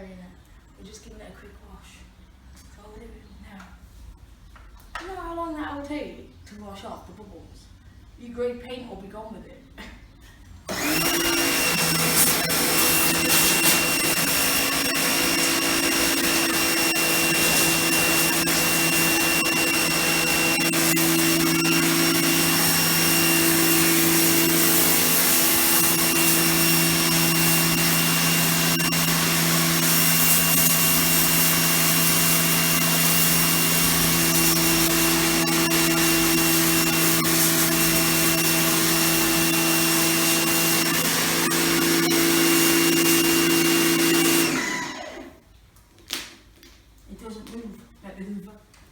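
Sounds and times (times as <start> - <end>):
pressure washer motor droning: 10.7 - 45.3.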